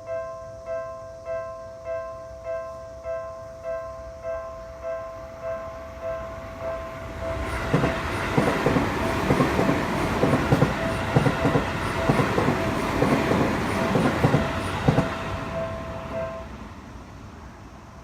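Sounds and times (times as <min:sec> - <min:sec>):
level-crossing warning bell: 0:00.0 - 0:16.7
train wheels clattering: 0:07.4 - 0:15.4.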